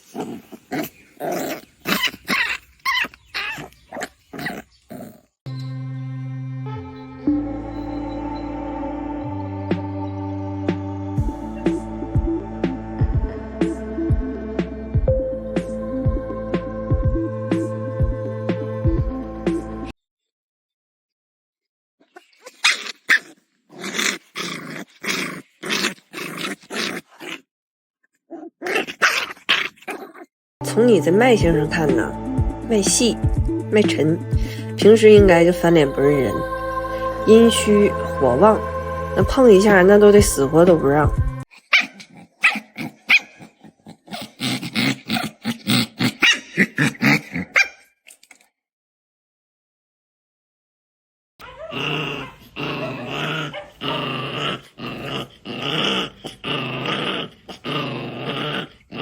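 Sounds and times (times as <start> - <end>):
dog barking and growling: 0.0 - 5.4, 22.1 - 27.5, 28.3 - 30.3, 31.2 - 48.3, 51.4 - 59.0.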